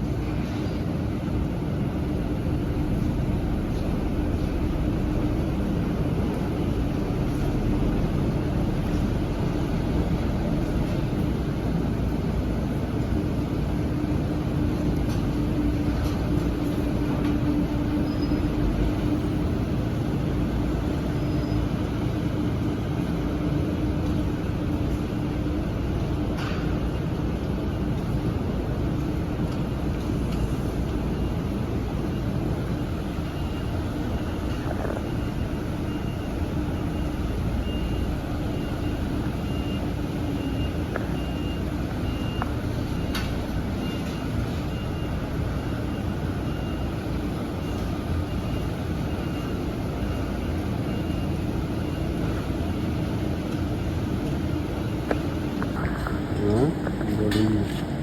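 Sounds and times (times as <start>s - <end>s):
high electronic warning beeps: 30.6s - 52.5s
machine humming: 55.6s - 58.0s.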